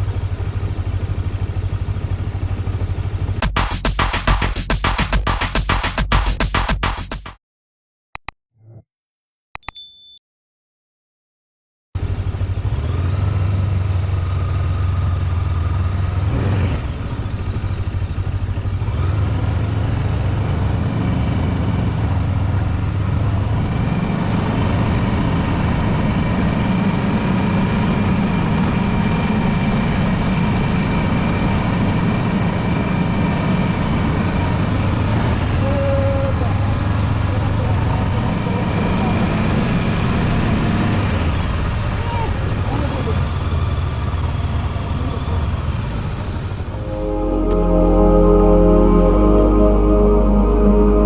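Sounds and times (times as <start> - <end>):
motorcycle engine running: 0.0 - 3.5.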